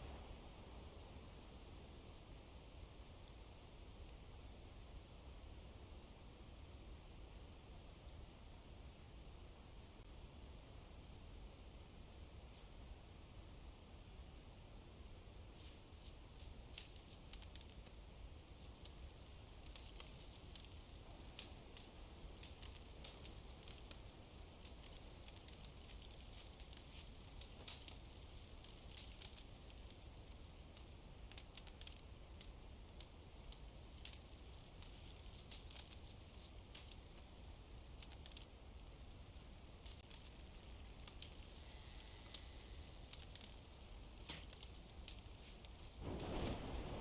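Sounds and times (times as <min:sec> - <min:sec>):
campfire crackling: 0:00.0 - 0:47.0
low steady hum: 0:00.0 - 0:47.0
burning wood snapping and popping: 0:15.6 - 0:47.0.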